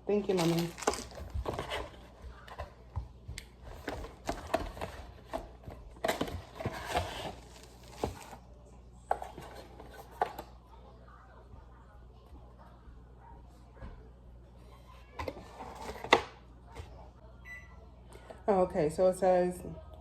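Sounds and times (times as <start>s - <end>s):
packaging rustling: 0.3s - 2.0s.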